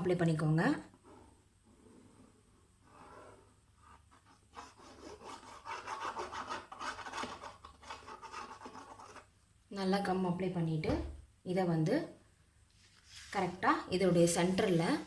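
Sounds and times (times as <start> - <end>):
glue rubbing strokes: 3.8 - 9.3.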